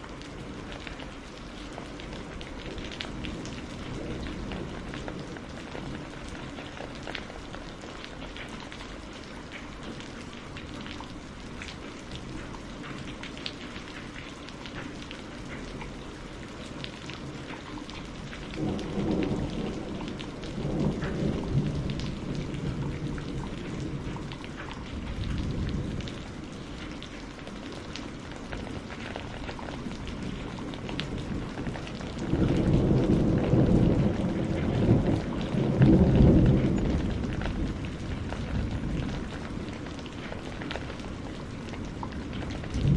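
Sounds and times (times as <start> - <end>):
raindrop ticks: 0.0 - 42.9
steady rain hiss: 0.0 - 42.9
thunder rumbling: 18.2 - 42.9.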